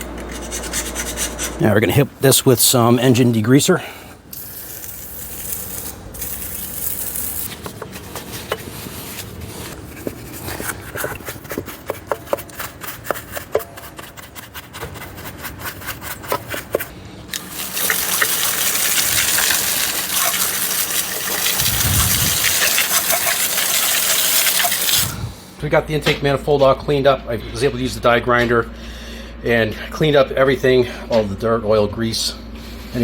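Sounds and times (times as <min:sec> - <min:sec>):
liquid dripping: 0:17.3 - 0:25.2.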